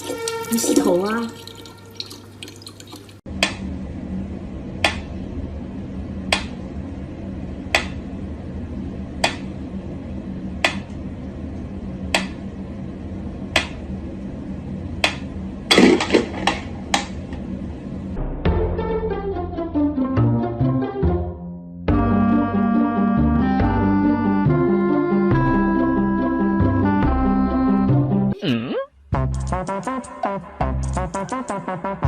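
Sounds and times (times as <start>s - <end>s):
steady hum: 3.3s - 18.4s.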